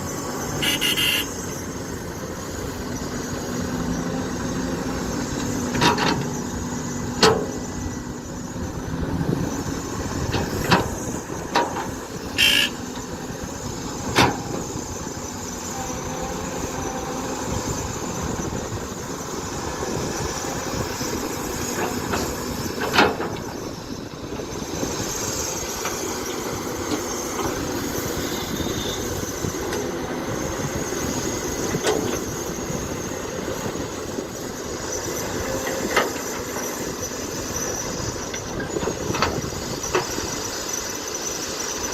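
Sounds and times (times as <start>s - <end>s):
excavator engine running: 0.0s - 41.9s
brief high squeal: 0.4s - 1.6s, 12.4s - 12.9s, 28.4s - 29.1s.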